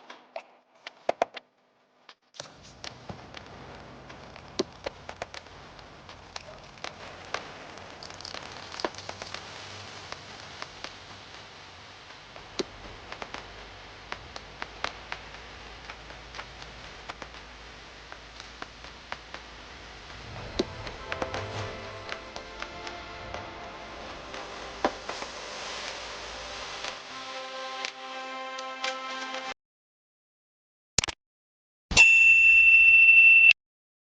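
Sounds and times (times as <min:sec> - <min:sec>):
steady hiss: 0:02.4 - 0:28.2.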